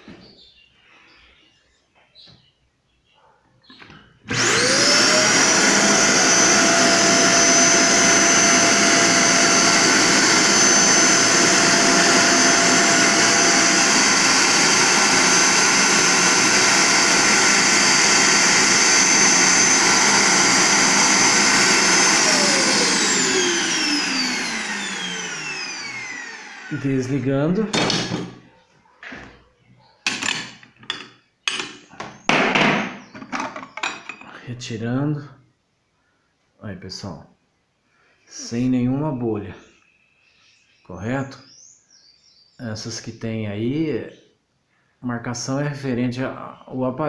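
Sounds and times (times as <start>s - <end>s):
vacuum motor whining: 4.3s - 28.3s.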